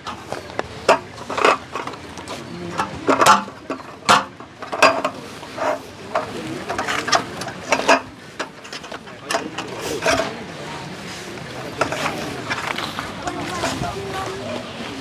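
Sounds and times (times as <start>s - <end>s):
hard objects clicking and knocking: 0.0s - 10.4s.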